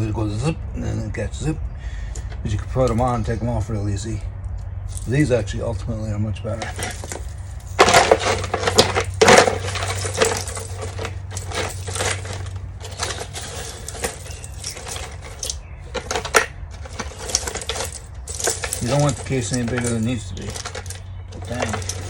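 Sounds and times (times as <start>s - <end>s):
metal chains clinking and rattling: 2.5s - 3.4s, 4.8s - 5.5s, 6.4s - 22.0s.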